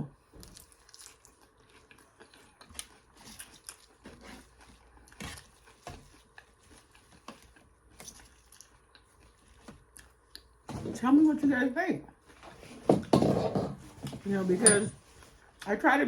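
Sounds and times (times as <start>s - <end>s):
person chewing food: 0.2s - 10.7s.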